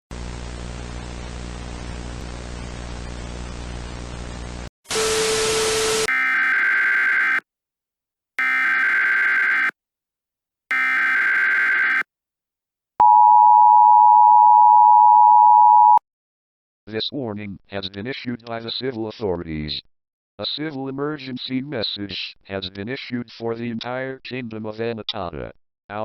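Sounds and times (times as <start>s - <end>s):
harsh two-tone alert signal: 4.9s - 7.4s, 8.4s - 9.7s, 10.7s - 12.0s
data bursts: 8.4s - 9.7s, 10.7s - 12.0s.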